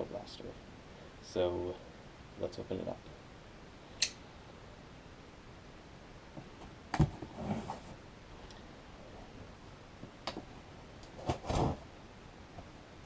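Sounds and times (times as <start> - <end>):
box scraping: 7.0 - 8.0, 11.2 - 11.8
box rustling: 11.1 - 11.8.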